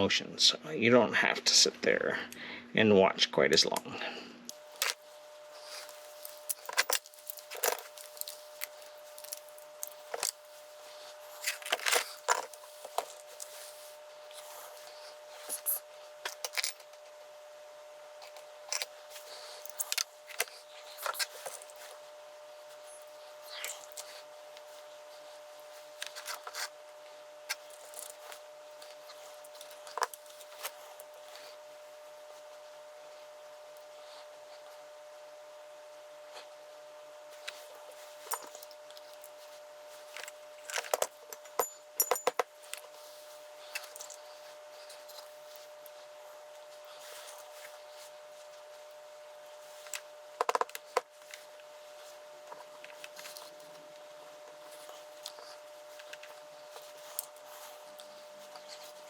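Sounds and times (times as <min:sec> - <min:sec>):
faint steady hum: 0:00.0 - 0:59.0
keys and lock parts clicking: 0:06.2 - 0:10.3.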